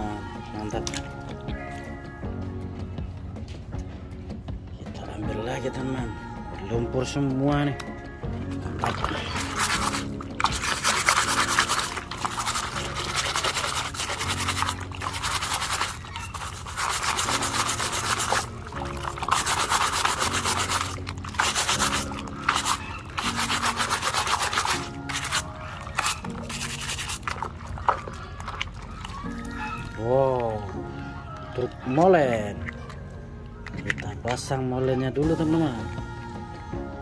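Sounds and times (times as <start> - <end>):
scrubbing plastic toy truck: 8.8 - 30.5.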